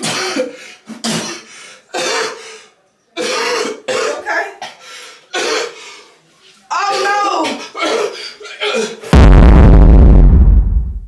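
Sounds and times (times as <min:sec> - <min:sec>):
person coughing hard: 0:03.2 - 0:04.8.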